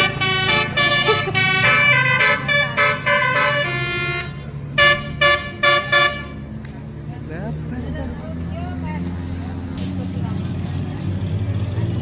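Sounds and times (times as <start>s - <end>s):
multi-tone musical air horn: 0.0s - 6.4s.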